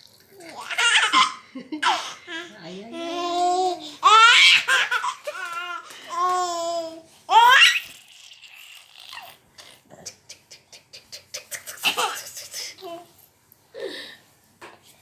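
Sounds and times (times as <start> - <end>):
baby babbling and laughing: 0.4 - 8.2, 11.3 - 13.1.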